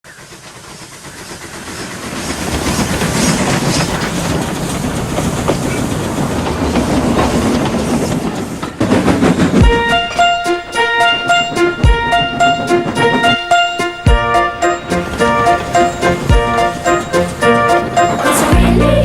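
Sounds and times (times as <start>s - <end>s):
train wheels clickety-clack: 0.0s - 19.0s.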